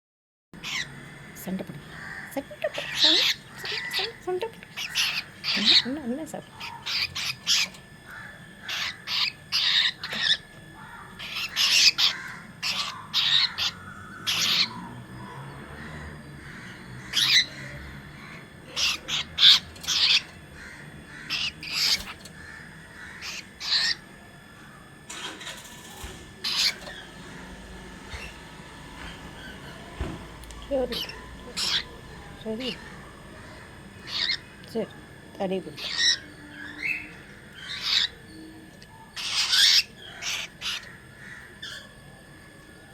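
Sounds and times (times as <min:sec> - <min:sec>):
cockatiel squawking: 0:00.6 - 0:00.9, 0:04.8 - 0:05.9, 0:06.6 - 0:07.8, 0:08.6 - 0:10.5, 0:11.2 - 0:14.7, 0:18.7 - 0:20.3, 0:21.2 - 0:22.3, 0:23.1 - 0:24.0, 0:26.4 - 0:27.2, 0:30.9 - 0:32.0, 0:34.0 - 0:34.6, 0:35.8 - 0:36.2, 0:37.6 - 0:38.2, 0:39.2 - 0:40.9.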